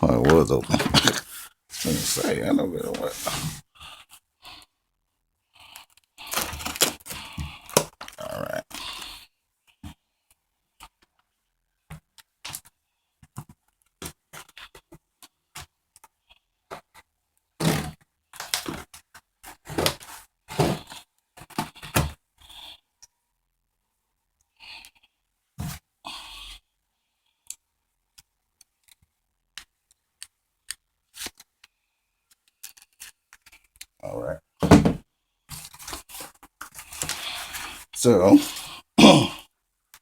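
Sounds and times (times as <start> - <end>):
cardboard scraping or tearing: 0.7 - 3.6
packaging taps clicks and rustles: 6.3 - 8.2
cardboard box thump: 34.6 - 35.0.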